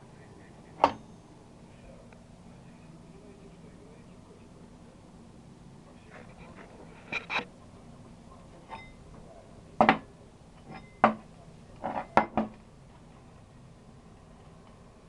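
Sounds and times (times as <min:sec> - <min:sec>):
hard objects clanking and knocking: 0:00.8 - 0:01.2, 0:09.8 - 0:12.6.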